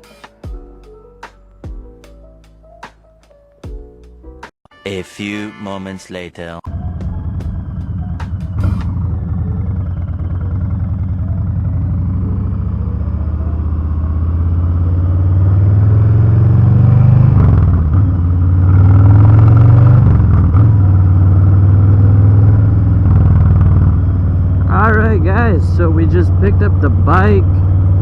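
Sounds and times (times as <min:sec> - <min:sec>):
motorcycle engine rumbling: 0:06.7 - 0:28.0.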